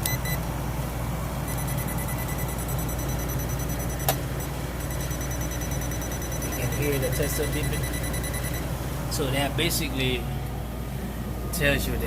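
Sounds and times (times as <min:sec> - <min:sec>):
voltage tester beeping: 0:00.0 - 0:00.4, 0:01.5 - 0:08.7
compressor and fan hum: 0:00.0 - 0:12.0.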